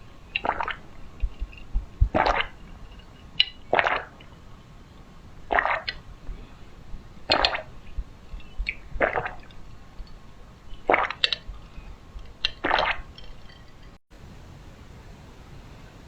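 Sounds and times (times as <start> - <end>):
person gulping a drink: 0.4 - 2.6, 5.5 - 6.0, 7.3 - 7.7, 8.6 - 9.6, 10.9 - 11.6.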